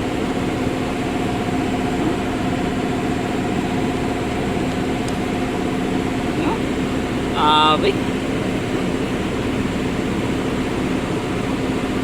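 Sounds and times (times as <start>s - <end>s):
engine idling with knocking: 0.0s - 12.0s.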